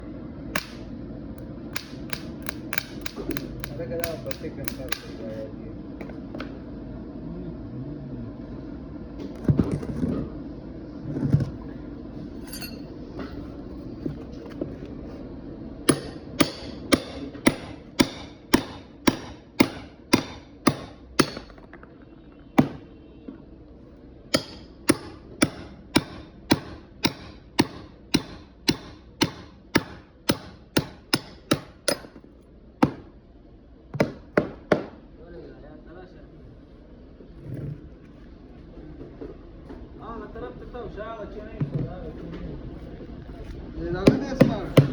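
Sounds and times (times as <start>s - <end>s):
hammer blows with bright ring: 12.5s - 12.9s.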